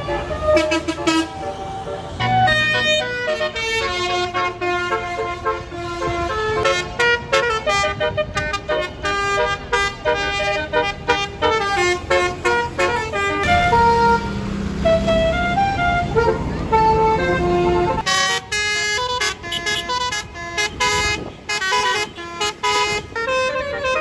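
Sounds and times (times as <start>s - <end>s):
bus musical horn melody: 0.0s - 24.0s
low engine rumble: 7.9s - 18.1s.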